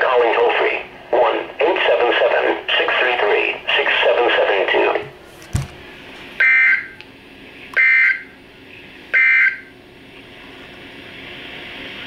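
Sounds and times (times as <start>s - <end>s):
low radio hiss: 0.0s - 6.5s.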